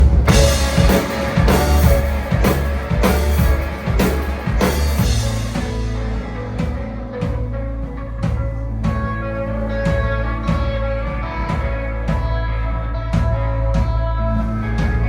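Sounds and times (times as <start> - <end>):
drum kit with cymbal hits: 0.0 - 9.2
guitar and bass: 0.0 - 15.0.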